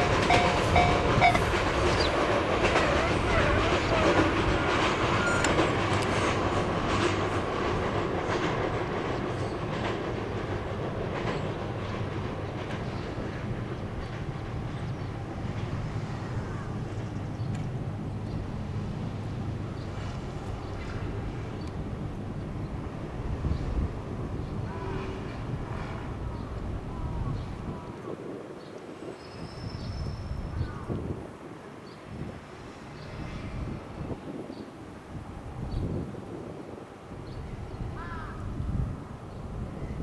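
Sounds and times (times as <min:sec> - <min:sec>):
wheels clicking over rail joints: 0:00.0 - 0:15.8
electric train running past: 0:00.0 - 0:27.9, 0:28.9 - 0:40.0.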